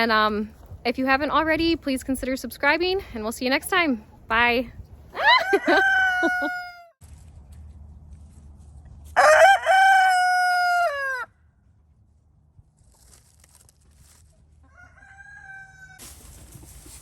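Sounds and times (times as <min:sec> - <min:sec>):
rooster crowing: 0:05.2 - 0:07.0, 0:09.2 - 0:11.4, 0:14.6 - 0:16.0.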